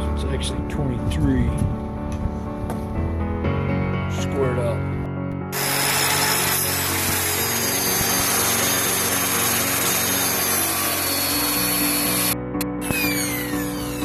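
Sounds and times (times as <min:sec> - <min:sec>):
power saw cutting wood: 0:05.5 - 0:14.0.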